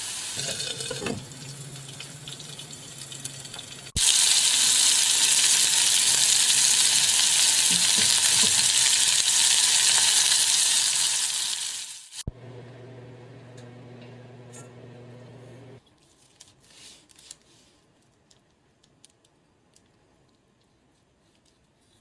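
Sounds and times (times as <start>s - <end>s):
food sizzling in a frying pan: 0.0s - 12.3s.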